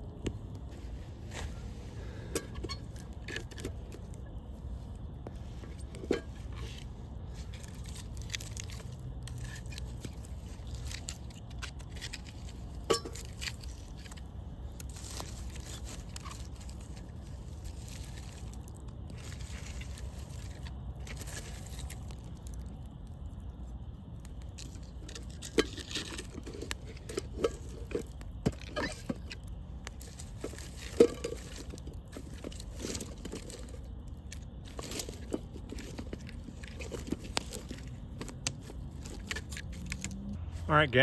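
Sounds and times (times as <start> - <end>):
burning wood popping: 0.0 - 41.0
campfire crackling: 0.0 - 41.0.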